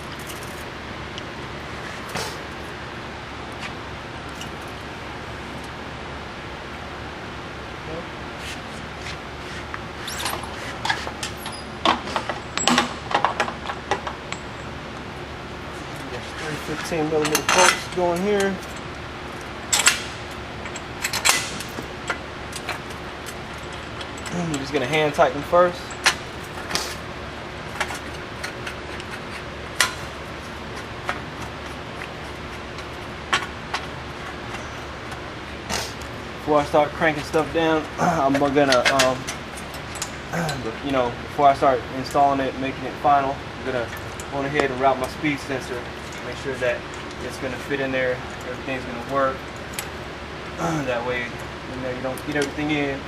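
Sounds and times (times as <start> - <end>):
steady low hum: 0.0 - 53.0
metal clinks and clanks: 10.0 - 11.7, 16.6 - 26.8.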